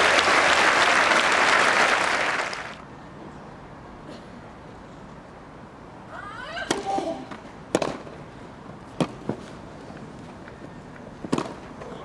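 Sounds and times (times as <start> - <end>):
rackets striking tennis balls: 7.7 - 8.1, 8.9 - 10.2, 11.0 - 12.0.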